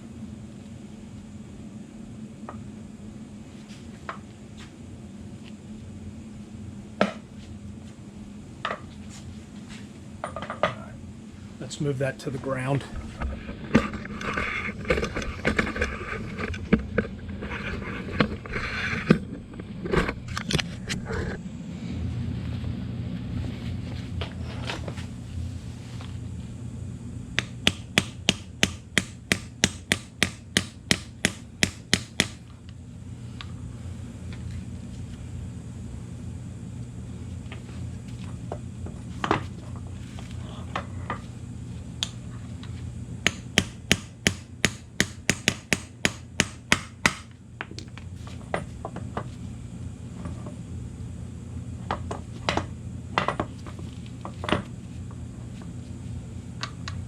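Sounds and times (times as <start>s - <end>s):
hammer striking metal: 27.4s - 32.4s, 43.3s - 47.3s.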